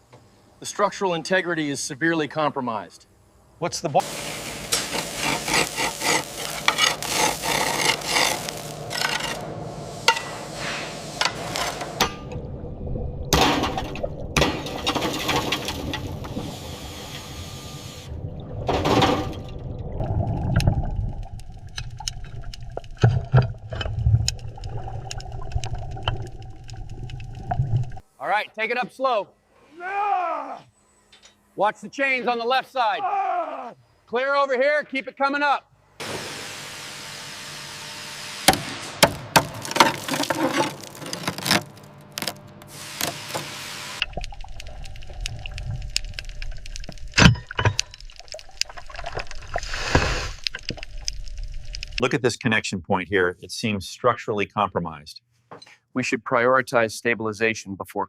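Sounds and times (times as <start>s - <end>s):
steady hiss: 0.0s - 12.1s, 15.3s - 18.1s, 42.6s - 44.1s, 49.5s - 52.2s
low mechanical rumble: 3.4s - 28.1s, 43.9s - 49.7s, 50.4s - 52.1s.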